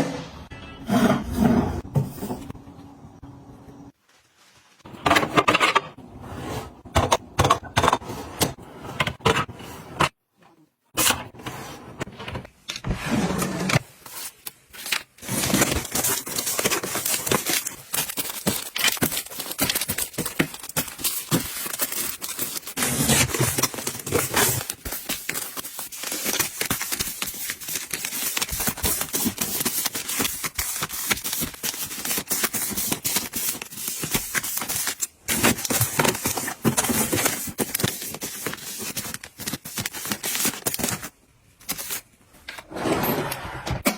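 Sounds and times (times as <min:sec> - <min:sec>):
plastic packaging crinkling and tearing: 0:13.9 - 0:42.0.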